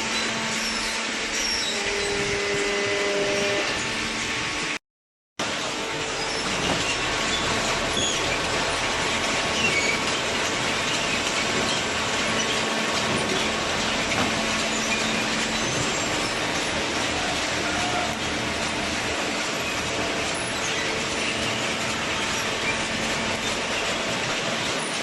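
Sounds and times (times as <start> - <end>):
cardboard baler running: 5.4 - 25.0.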